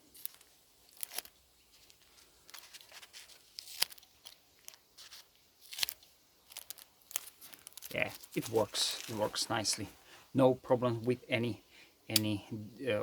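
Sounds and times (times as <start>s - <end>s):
faint scratching: 4.6s - 10.0s.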